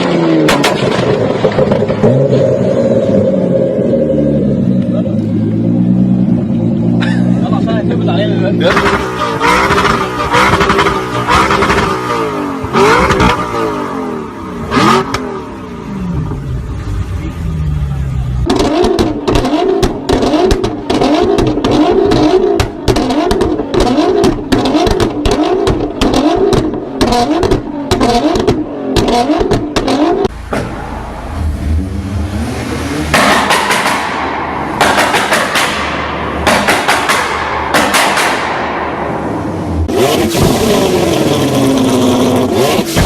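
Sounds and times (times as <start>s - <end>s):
car engine revving: 0.0s - 43.0s
exhaust pops and bangs: 0.4s - 2.1s, 18.4s - 30.9s, 33.1s - 41.1s
loud rushing bursts: 30.3s - 43.0s.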